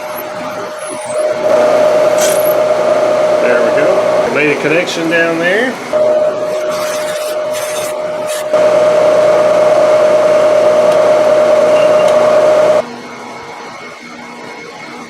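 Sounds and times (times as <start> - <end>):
metal cutting noise: 0.0 - 12.8
milling machine whine: 0.0 - 15.0.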